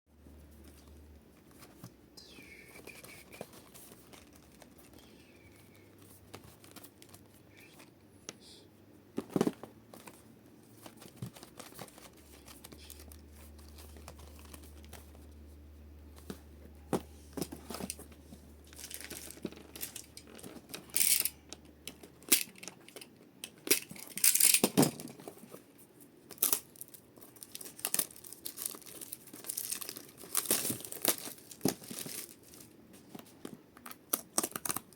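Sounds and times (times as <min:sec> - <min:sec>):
plastic wrapping crinkling: 0:09.3 - 0:15.2, 0:17.6 - 0:21.3, 0:26.2 - 0:34.9.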